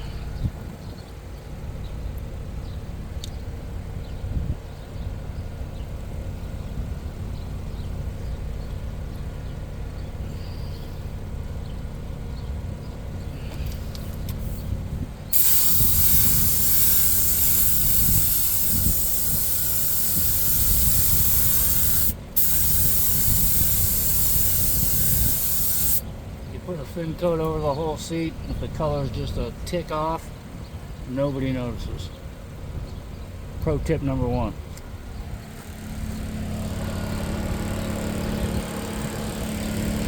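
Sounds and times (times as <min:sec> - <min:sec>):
low steady rumble: 0:00.0 - 0:40.0
spray gun hissing: 0:15.3 - 0:26.0.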